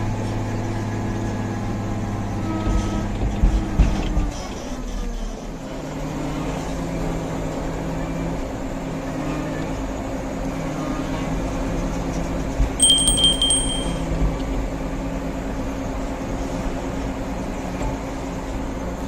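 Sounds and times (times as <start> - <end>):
high steady tone: 12.8 - 14.2.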